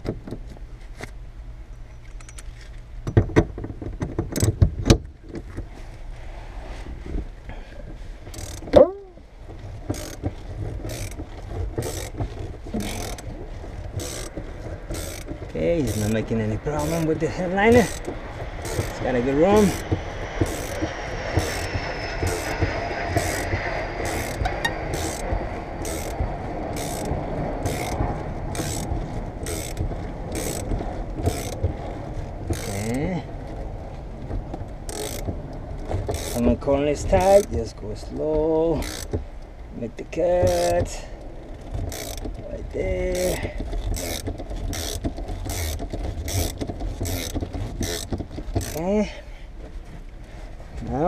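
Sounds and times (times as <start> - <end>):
glass removal tool ratcheting: 8.3 - 8.8, 10.9 - 11.2, 11.8 - 13.2, 14.0 - 14.3, 14.9 - 16.2, 16.8 - 19.0, 24.1 - 25.2, 25.8 - 26.2, 26.8 - 28.0, 28.6 - 31.6, 34.9 - 35.3, 36.1 - 36.4, 38.8 - 39.2, 40.4 - 40.9, 41.9 - 42.4, 43.1 - 48.8
cutting line rasping through urethane: 40.4 - 40.9.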